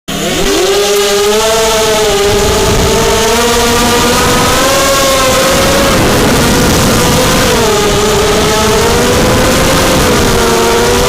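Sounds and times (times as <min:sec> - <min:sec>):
drone motors whining: 0:00.1 - 0:11.0
rushing noise: 0:00.1 - 0:11.0.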